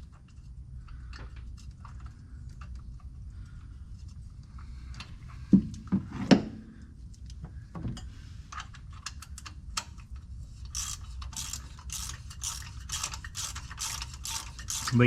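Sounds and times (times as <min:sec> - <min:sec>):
socket ratchet clicking: 0:10.8 - 0:15.0.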